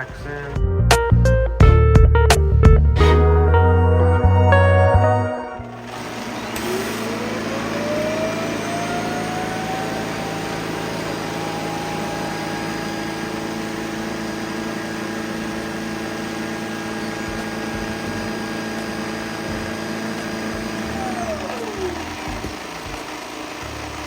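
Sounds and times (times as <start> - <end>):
motor whine: 5.6 - 24.0.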